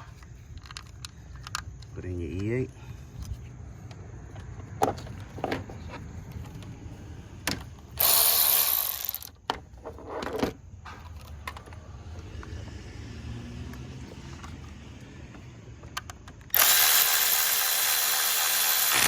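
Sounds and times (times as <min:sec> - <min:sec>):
ratchet clicking: 0:08.0 - 0:09.4, 0:16.0 - 0:19.0.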